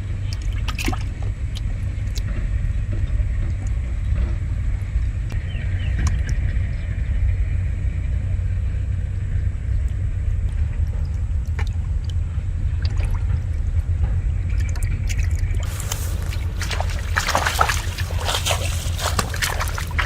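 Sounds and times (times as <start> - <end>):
steady low rumble: 0.0 - 20.0
faint water splashes: 0.2 - 2.2, 15.1 - 20.0.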